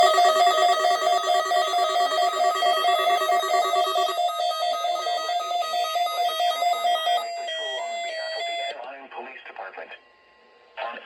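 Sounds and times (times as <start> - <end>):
warbling electronic alert tone: 0.0 - 8.0.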